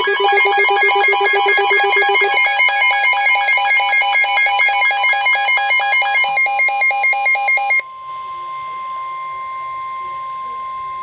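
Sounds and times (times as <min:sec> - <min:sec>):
steady alert tone: 0:00.0 - 0:02.9
rapid electronic beeping: 0:00.0 - 0:07.8.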